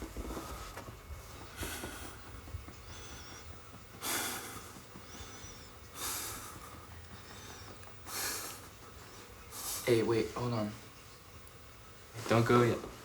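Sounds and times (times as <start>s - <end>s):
person breathing heavily: 1.4s - 9.9s.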